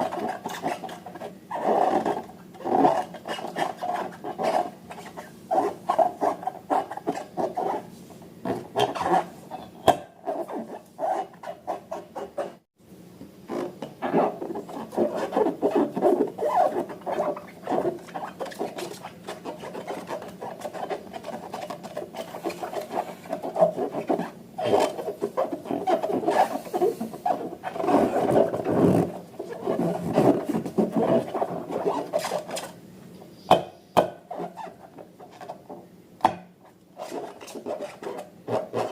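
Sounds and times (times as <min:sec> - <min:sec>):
rubbing and squishing slime: 0:13.6 - 0:32.8.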